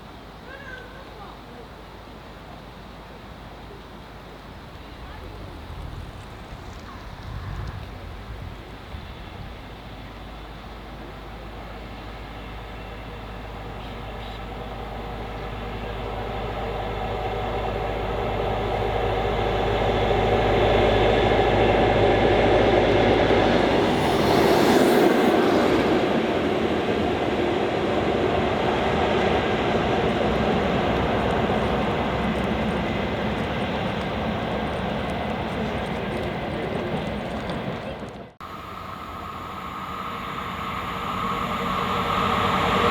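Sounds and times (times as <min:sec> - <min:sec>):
diesel train passing: 0:01.6 - 0:42.9
carriages rumbling: 0:04.6 - 0:42.9
train hiss: 0:23.0 - 0:36.7, 0:38.4 - 0:42.9.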